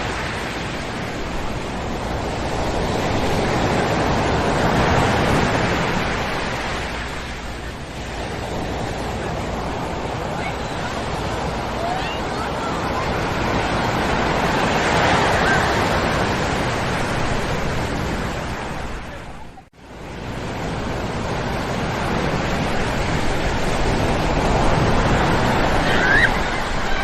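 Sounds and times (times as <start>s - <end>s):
ocean waves breaking on beach: 0.0s - 27.0s.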